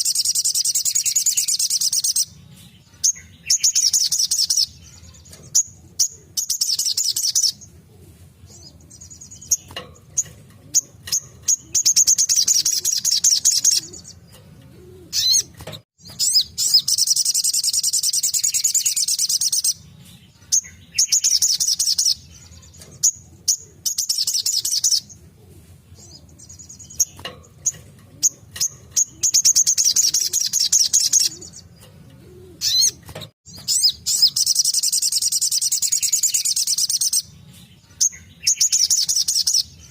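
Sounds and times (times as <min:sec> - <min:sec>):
bird chips and calls: 0:00.0 - 0:07.8, 0:08.4 - 0:25.2, 0:25.9 - 0:39.9
bird trilling: 0:09.3 - 0:15.5, 0:27.0 - 0:37.3.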